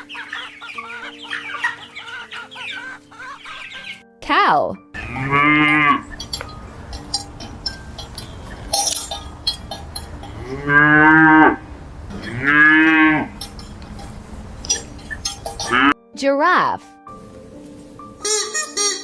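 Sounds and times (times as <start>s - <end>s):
cow mooing: 5.0s - 16.0s
light clinks and knocks: 5.0s - 16.0s.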